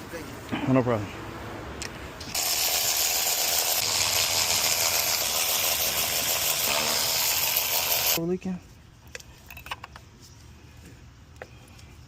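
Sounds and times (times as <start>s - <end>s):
ratchet wrench clicking rapidly: 2.3s - 8.2s.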